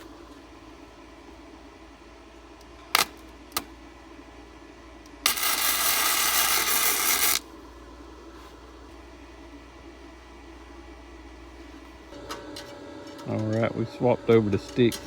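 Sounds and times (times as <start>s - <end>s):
welder crackling hiss: 5.2s - 7.4s.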